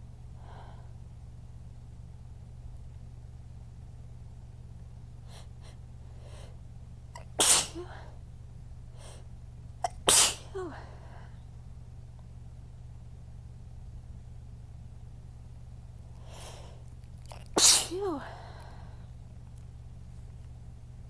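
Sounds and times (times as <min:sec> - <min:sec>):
steady low hum: 0:00.0 - 0:21.0
person sneezing: 0:07.2 - 0:08.1, 0:09.8 - 0:11.0, 0:17.3 - 0:18.8.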